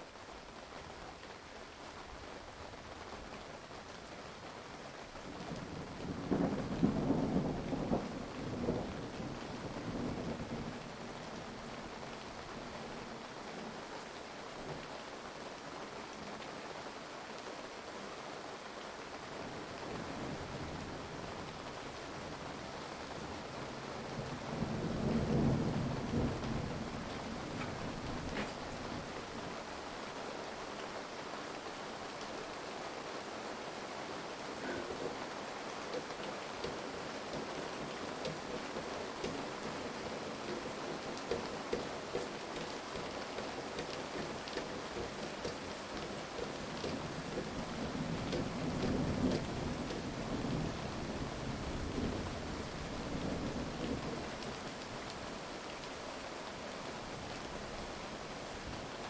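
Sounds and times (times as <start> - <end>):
heavy rain falling: 0.0 - 59.0
thunder rumbling: 5.2 - 14.0, 19.4 - 30.2, 34.2 - 55.0.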